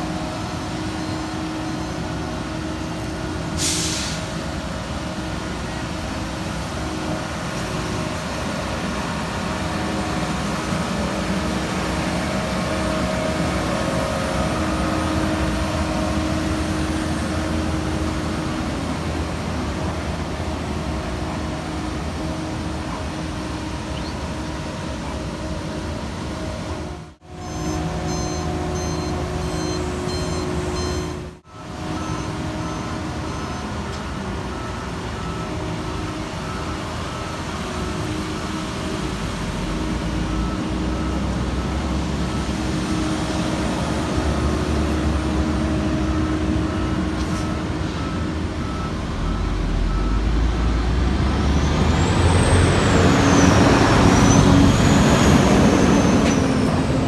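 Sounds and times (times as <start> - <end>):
heavy construction machinery running: 0.0 - 57.0
reversing alarm beeping: 27.2 - 57.0.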